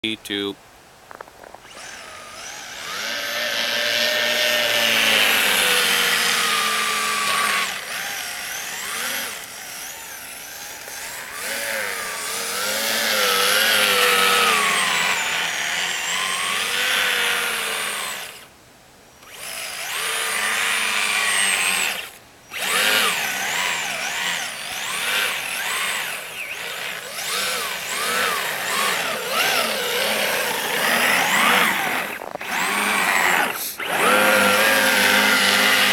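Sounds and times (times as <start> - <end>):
electric motor whining: 1.6 - 18.5, 19.2 - 35.9.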